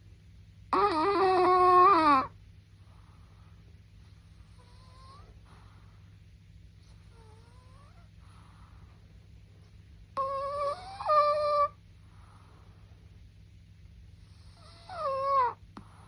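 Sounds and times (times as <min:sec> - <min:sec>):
dog snoring with nasal whistle: 0:00.7 - 0:02.3, 0:04.4 - 0:05.9, 0:06.8 - 0:08.8, 0:10.2 - 0:12.6, 0:14.2 - 0:16.0.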